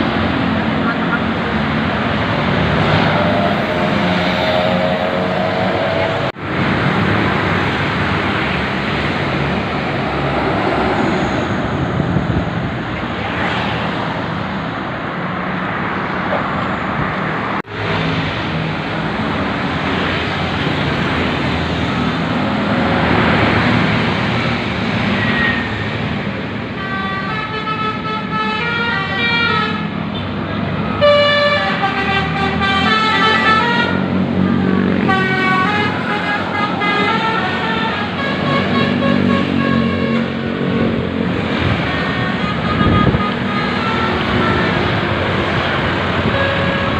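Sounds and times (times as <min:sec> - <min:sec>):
bus engine and road noise: 0:00.0 - 0:46.9
multi-tone bus horn tune: 0:26.7 - 0:40.9, 0:41.8 - 0:46.9.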